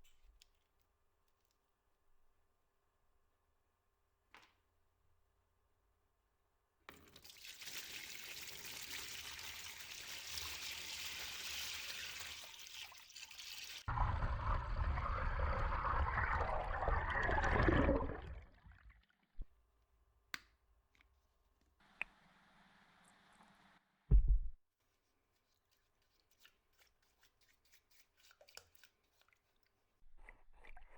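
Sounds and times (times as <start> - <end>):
water pouring and splashing: 6.9 - 19.4.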